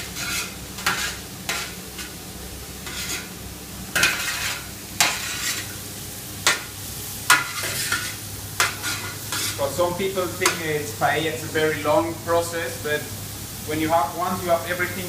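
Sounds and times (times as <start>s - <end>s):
food sizzling in a pan: 0.0s - 15.0s
spoon scraping pan bottom: 2.8s - 3.3s, 4.0s - 5.7s.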